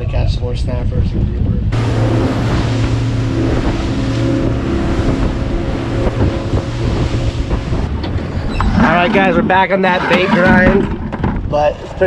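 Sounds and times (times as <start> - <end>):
wind on microphone: 0.0 - 12.0
boat engine humming: 1.7 - 10.8.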